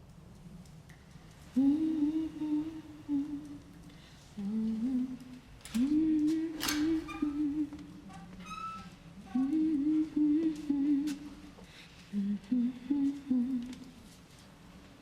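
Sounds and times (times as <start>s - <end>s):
woman humming: 1.6s - 3.7s, 4.4s - 8.3s, 9.2s - 11.4s, 12.1s - 13.9s.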